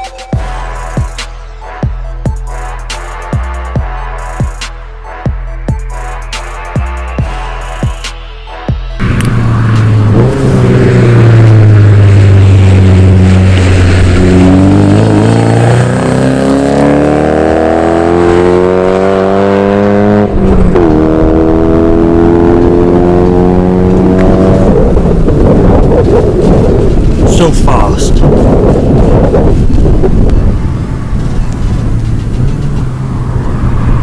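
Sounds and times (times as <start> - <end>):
car engine accelerating hard: 9.0 - 34.0.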